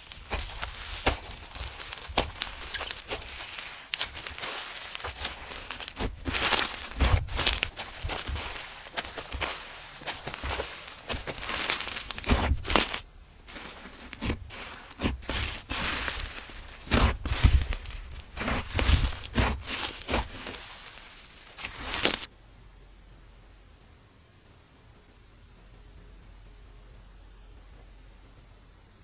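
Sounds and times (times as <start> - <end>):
slime squishing and popping: 0.0 - 20.8.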